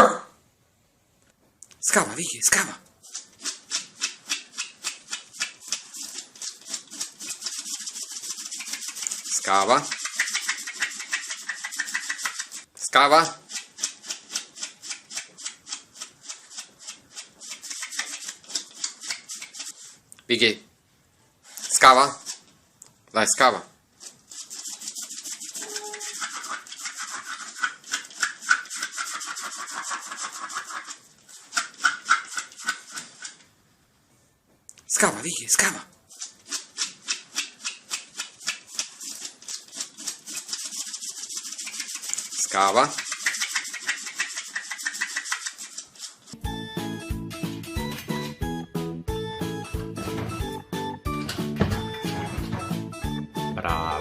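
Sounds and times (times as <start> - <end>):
dog paws scratching: 1.9 - 20.0, 24.0 - 33.4, 35.6 - 46.4.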